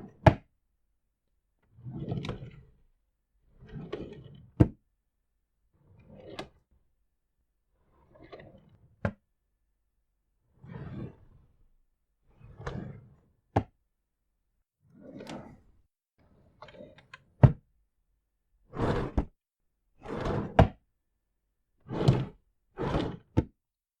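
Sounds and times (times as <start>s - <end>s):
drawers sliding: 18.7s - 19.3s, 20.1s - 20.6s, 21.9s - 23.3s.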